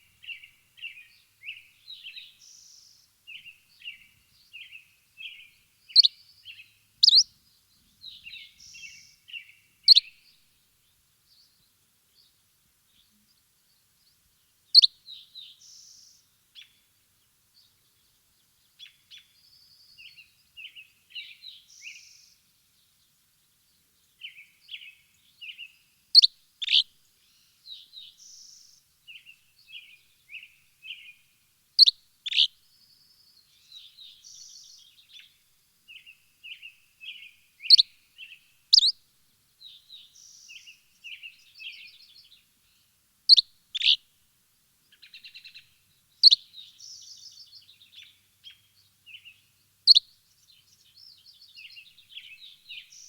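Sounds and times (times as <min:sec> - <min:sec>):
songbirds chirping and twittering: 0:00.0 - 0:53.0
loud sharp downward bird chirp: 0:07.0 - 0:07.2.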